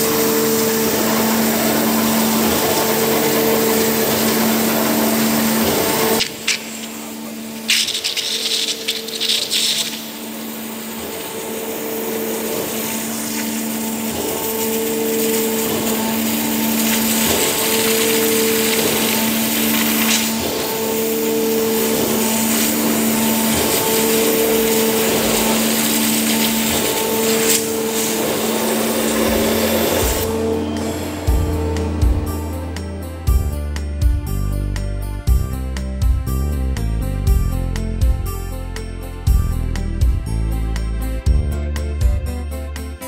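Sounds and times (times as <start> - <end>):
water jet hissing: 0.0 - 33.9
pulsing machine hum: 0.0 - 36.6.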